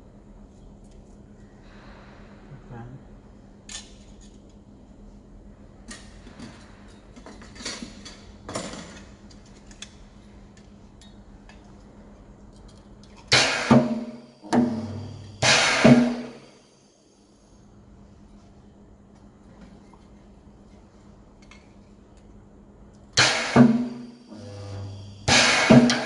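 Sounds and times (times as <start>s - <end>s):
mains hum: 0.0s - 26.0s
spot welder crackling bursts: 23.2s - 26.0s.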